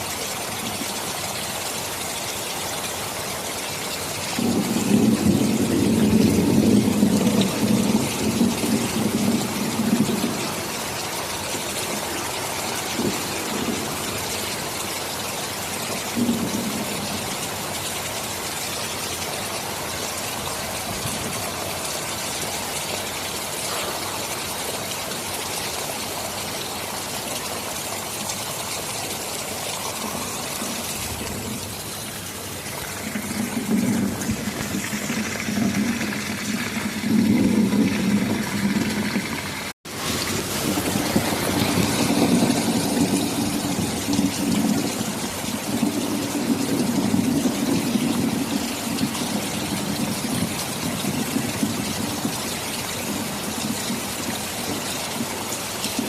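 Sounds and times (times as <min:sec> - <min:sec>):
heavy rain hissing: 0:00.0 - 0:56.0
thunder rumbling: 0:04.3 - 0:14.8, 0:15.9 - 0:17.5, 0:29.6 - 0:54.3.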